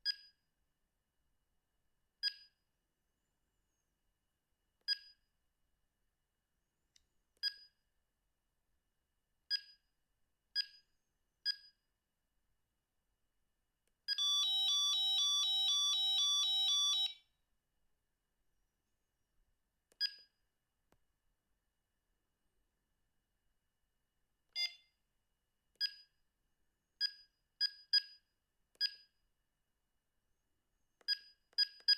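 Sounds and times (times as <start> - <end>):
electronic ringtone: 14.1 - 17.2
phone key beeps: 14.1 - 17.2, 20.0 - 20.3, 31.0 - 31.9.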